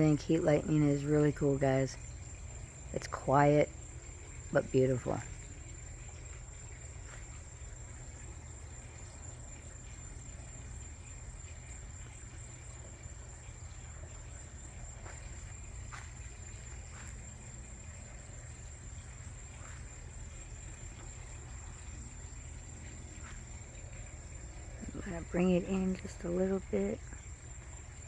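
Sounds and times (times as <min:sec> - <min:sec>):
insects droning: 0:00.0 - 0:28.0
low steady rumble: 0:00.0 - 0:28.0.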